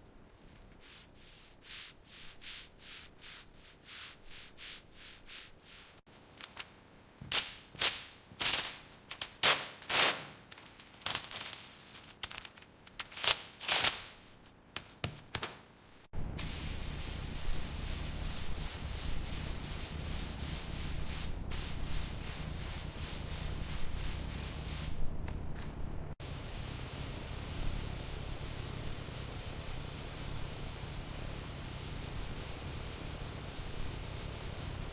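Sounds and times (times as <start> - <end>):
spray hissing: 16.4 - 25.0, 26.2 - 34.9.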